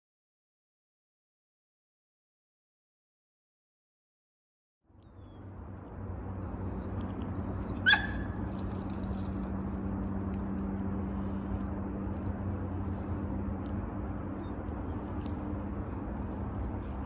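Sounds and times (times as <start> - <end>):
steady background hum: 4.9 - 17.0.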